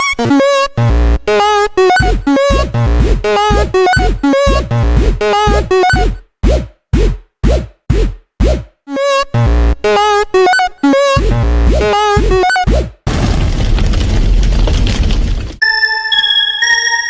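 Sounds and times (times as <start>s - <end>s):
booming drum-machine kicks: 2.0s - 8.7s, 11.2s - 15.4s.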